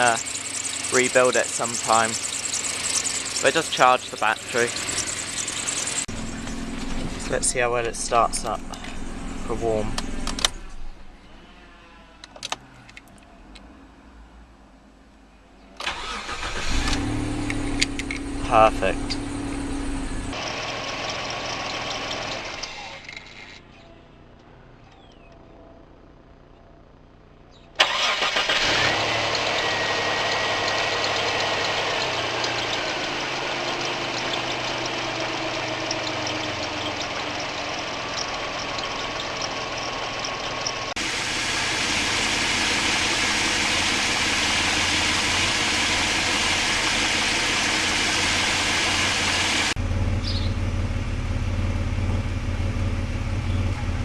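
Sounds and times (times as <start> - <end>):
car engine starting and idling: 0.0 - 11.2, 15.8 - 23.6, 24.6 - 54.0
alternator squeal: 0.0 - 12.2, 15.9 - 25.4, 27.5 - 50.6.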